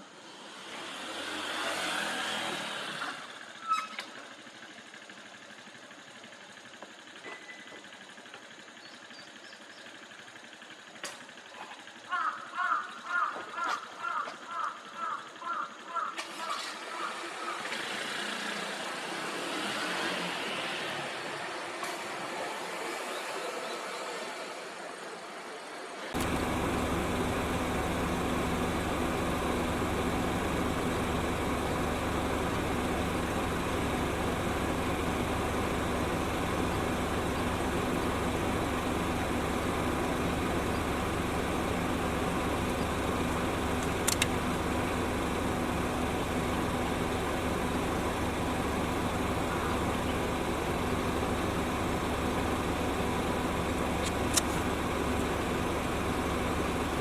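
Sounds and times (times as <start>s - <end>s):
sharp click: 43.8s - 44.3s.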